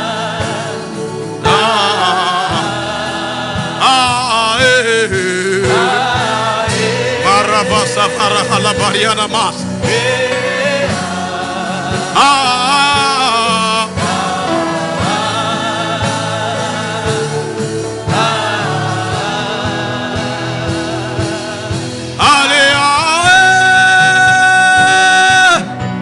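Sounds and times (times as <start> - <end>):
accompaniment with regular beat: 0.0 - 25.6
gospel singing with vibrato: 0.0 - 26.0.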